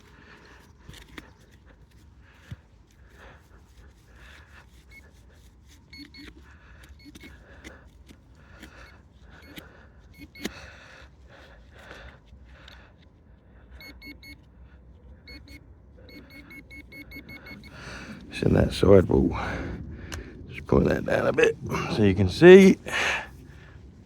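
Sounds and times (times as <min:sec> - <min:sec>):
metal detector beeping: 0:05.9 - 0:07.4, 0:08.7 - 0:10.6, 0:13.8 - 0:14.4, 0:15.3 - 0:18.8.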